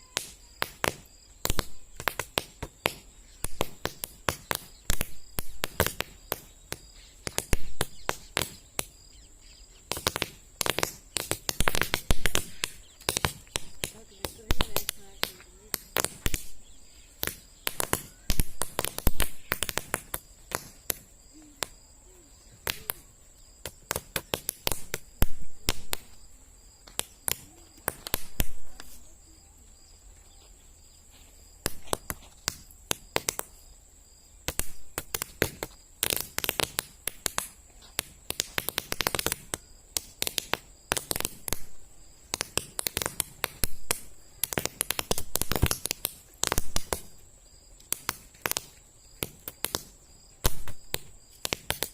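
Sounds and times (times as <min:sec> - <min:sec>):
toy caps popping: 0:17.2 - 0:21.0.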